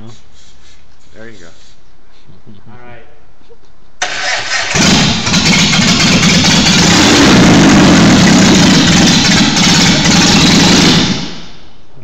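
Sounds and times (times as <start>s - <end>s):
car engine running: 4.7s - 11.5s.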